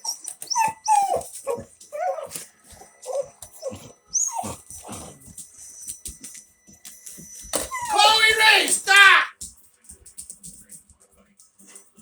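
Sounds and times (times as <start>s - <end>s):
dogs whining and yipping: 0.0s - 6.3s, 7.3s - 8.2s.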